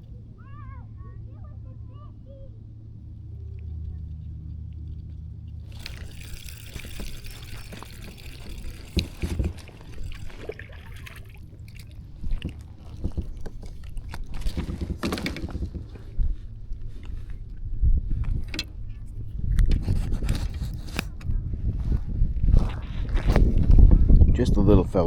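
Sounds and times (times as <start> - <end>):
water trickling and splashing: 3.0 - 17.5.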